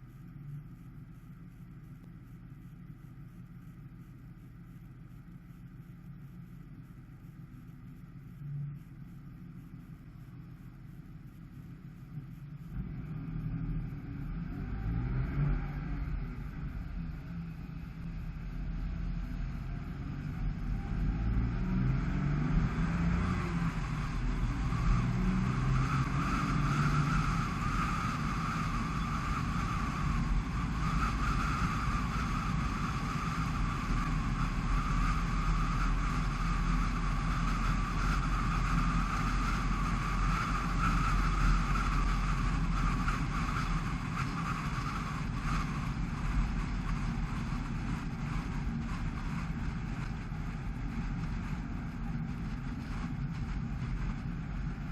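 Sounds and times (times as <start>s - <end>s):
car engine accelerating: 12.6s - 54.8s.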